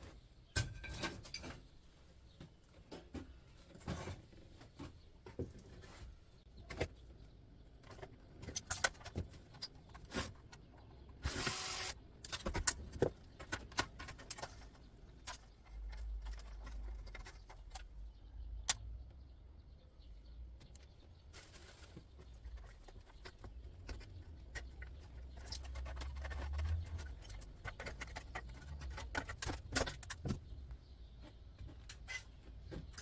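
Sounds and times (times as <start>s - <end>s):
metal parts clicking and knocking: 7.8s - 11.6s, 23.2s - 30.4s.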